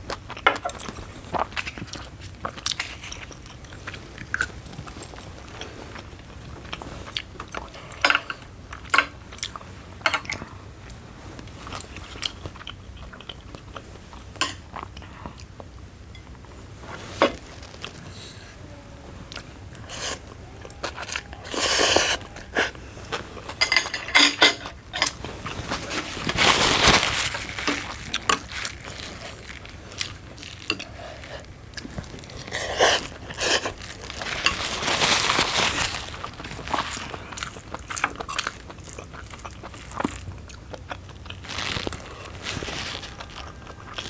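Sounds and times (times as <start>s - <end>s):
chewing and crunching: 0.0s - 18.5s, 19.2s - 44.0s
utensils clinking on a dish: 8.0s - 9.2s, 23.5s - 25.2s.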